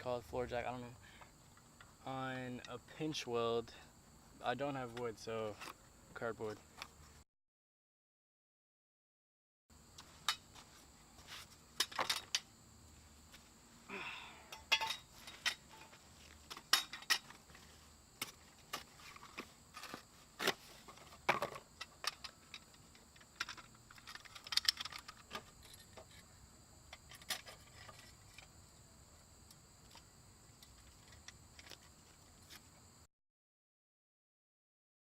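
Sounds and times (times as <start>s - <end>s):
faint steady hum: 0.0s - 7.2s, 9.7s - 33.1s
metallic clinks and rattles: 23.4s - 26.0s.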